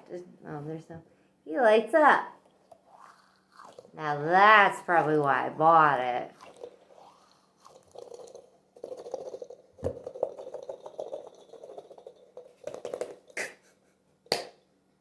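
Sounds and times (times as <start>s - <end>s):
squishy toy squishing and sticking: 2.5s - 4.0s.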